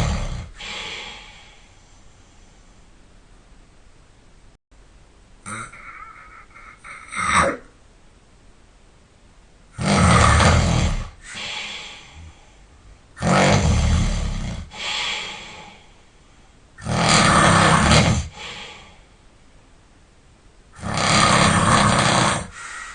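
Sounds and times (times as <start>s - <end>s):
person snoring loudly: 0.0s - 1.7s, 5.4s - 7.7s, 9.7s - 12.4s, 13.2s - 15.8s, 16.8s - 19.0s, 20.8s - 22.7s
short snorts: 0.0s - 1.7s, 9.8s - 12.5s, 13.2s - 15.9s, 16.8s - 19.0s, 20.8s - 22.9s
quiet breath: 0.0s - 2.9s, 11.1s - 13.2s, 14.5s - 16.8s, 18.2s - 19.2s, 22.4s - 22.9s.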